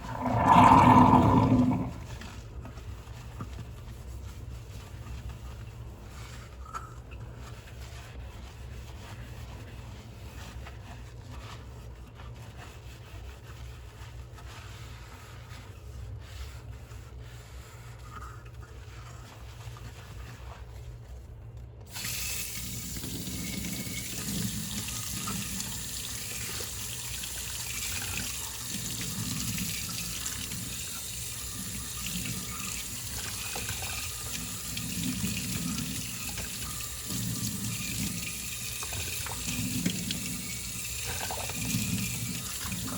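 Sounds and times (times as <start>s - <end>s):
water running into sink: 0.0s - 2.2s, 21.9s - 42.9s.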